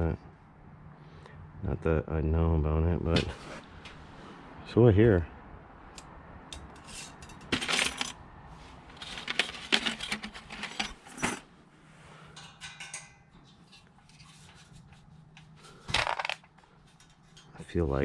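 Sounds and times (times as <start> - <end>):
metal bolts and nuts clinking: 6.5 - 8.2, 8.9 - 11.5, 12.3 - 17.7.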